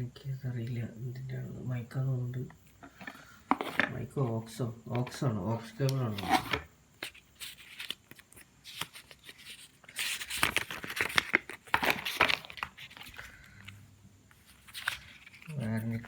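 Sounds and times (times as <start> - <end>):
paper and plastic rustling: 6.0 - 16.0
packaging clicks and knocks: 10.2 - 13.3.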